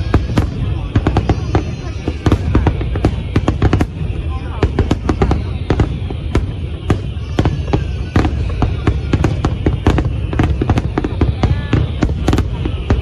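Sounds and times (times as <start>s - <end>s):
firework shell bursts crackling: 0.0s - 13.0s.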